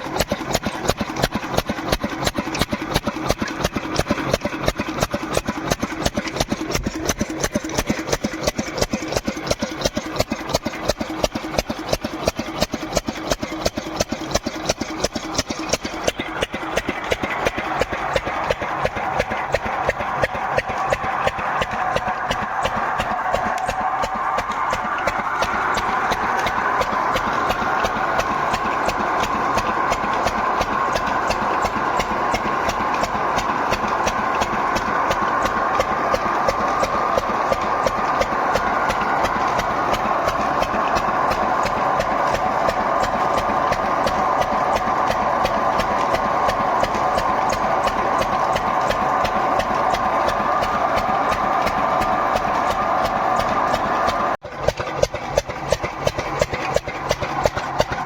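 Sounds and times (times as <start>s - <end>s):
engine knocking: 0.0s - 58.0s.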